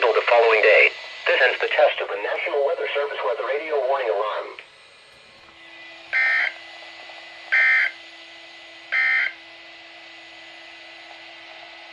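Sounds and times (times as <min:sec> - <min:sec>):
radio hiss: 0:00.0 - 0:04.7
digital data tone bursts: 0:06.2 - 0:06.6, 0:07.5 - 0:08.0.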